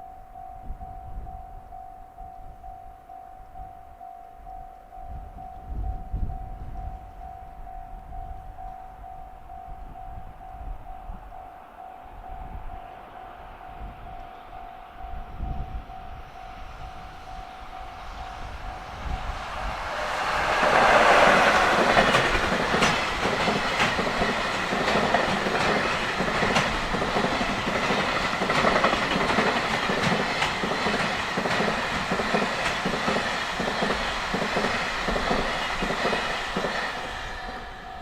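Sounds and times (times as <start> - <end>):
freight train passing: 9.0 - 38.0
wheels clacking over rail joints: 18.2 - 37.8.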